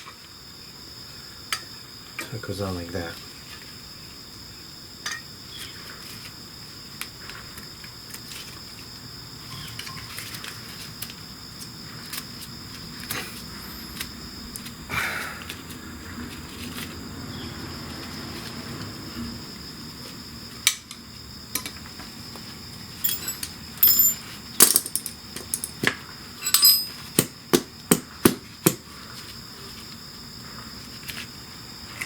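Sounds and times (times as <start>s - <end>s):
metal clicks of hand tools: 23.0s - 25.8s.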